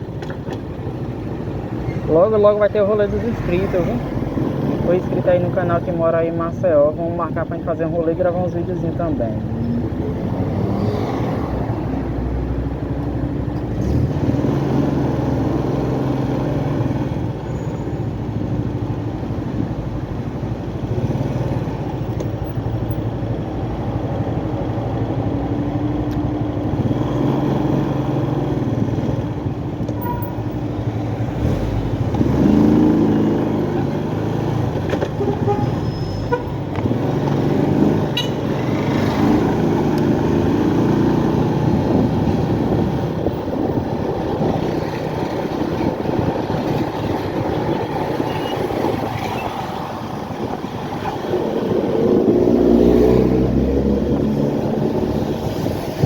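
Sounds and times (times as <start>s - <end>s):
road and wind noise: 0.0s - 56.0s
motorcycle engine revving: 26.5s - 56.0s.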